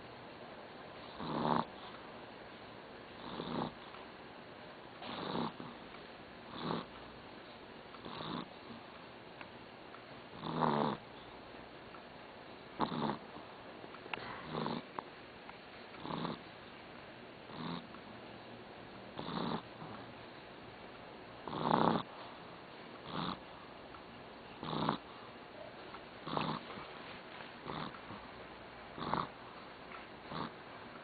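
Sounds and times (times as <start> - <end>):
pet snoring: 1.0 - 1.9, 3.2 - 3.9, 5.0 - 5.8, 6.5 - 6.9, 8.0 - 8.8, 10.4 - 11.0, 12.8 - 13.3, 14.3 - 15.0, 16.0 - 16.4, 17.5 - 17.9, 19.2 - 20.1, 21.4 - 22.1, 23.0 - 23.4, 24.6 - 25.2, 26.2 - 26.9, 27.6 - 28.2, 29.0 - 29.4, 30.2 - 30.6.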